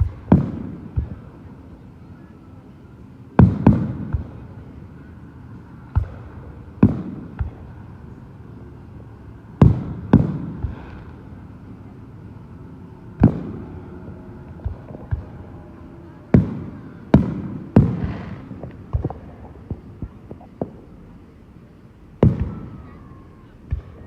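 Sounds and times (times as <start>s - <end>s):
firework pops and crackles: 0.0s - 1.2s, 3.4s - 4.5s, 5.9s - 7.8s, 9.6s - 11.3s, 13.2s - 13.8s, 16.3s - 21.2s, 22.2s - 22.8s
fireworks bangs echoing: 0.0s - 1.5s, 3.4s - 4.8s, 5.8s - 8.2s, 9.6s - 11.6s, 12.5s - 21.3s, 22.2s - 23.0s.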